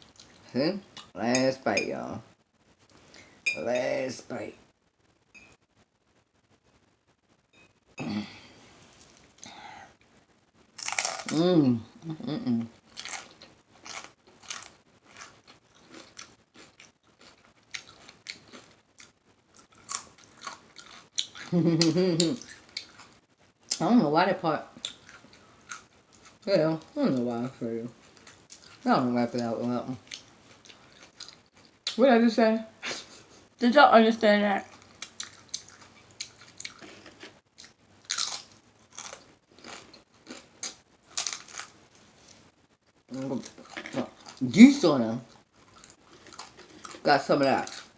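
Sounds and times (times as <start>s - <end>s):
crunching bites: 10.8s - 11.4s, 34.9s - 41.8s
person chewing with mouth open: 12.9s - 23.8s, 28.0s - 28.9s, 30.0s - 31.8s, 34.7s - 41.7s, 45.3s - 47.0s.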